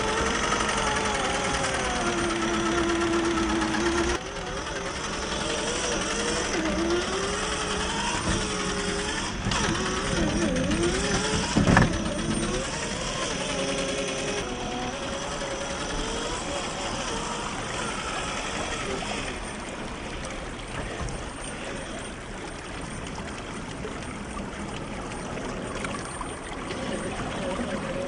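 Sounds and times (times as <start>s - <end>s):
toy motor whine: 0.0s - 19.6s.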